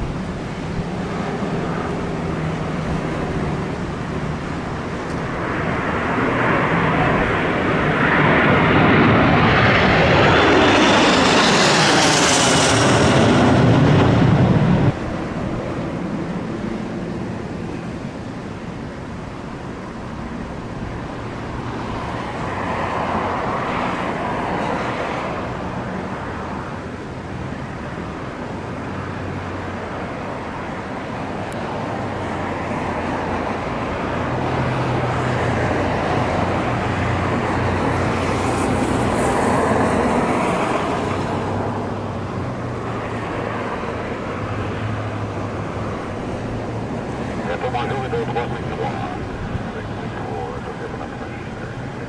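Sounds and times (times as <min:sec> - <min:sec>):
wind buffeting microphone: 0:00.0 - 0:16.3
aircraft engines: 0:00.0 - 0:52.0.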